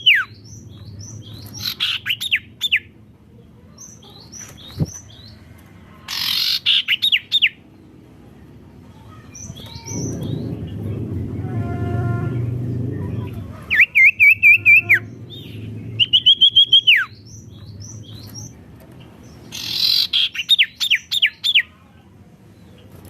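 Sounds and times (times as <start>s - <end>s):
songbird singing: 0.0s - 23.0s
low steady rumble: 7.6s - 19.6s.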